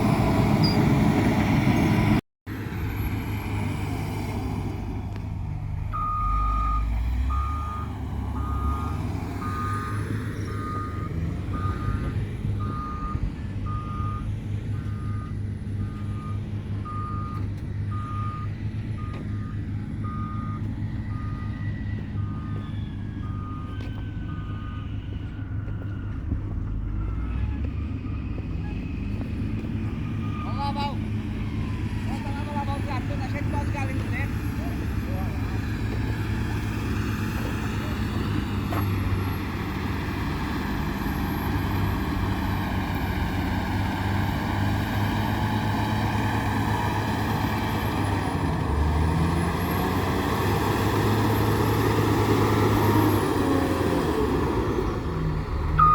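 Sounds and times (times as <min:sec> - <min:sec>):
diesel engine running: 0:00.0 - 0:55.9
backup alarm beeping: 0:05.9 - 0:21.6.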